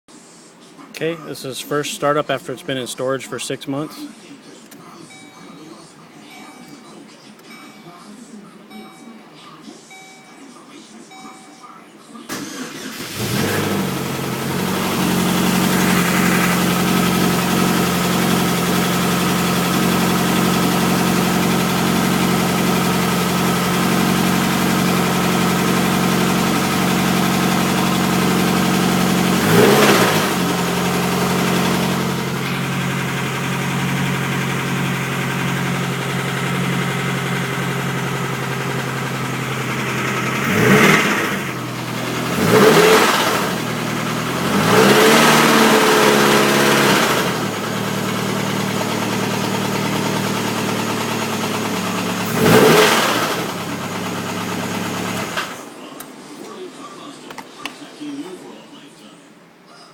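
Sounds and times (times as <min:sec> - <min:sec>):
car engine idling and revving: 0:12.3 - 0:55.6.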